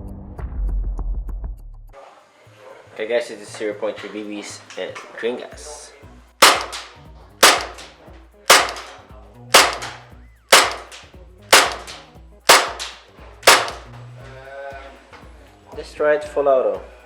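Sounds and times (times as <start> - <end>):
airsoft pistol shots: 6.4 - 7.9, 8.5 - 9.0, 9.6 - 13.9.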